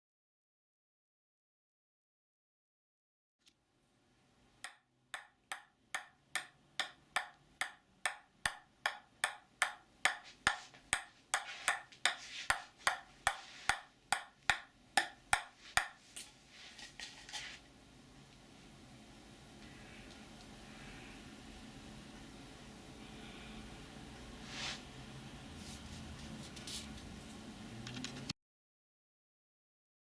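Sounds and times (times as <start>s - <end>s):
sharp evenly spaced knocking: 4.6s - 16.0s.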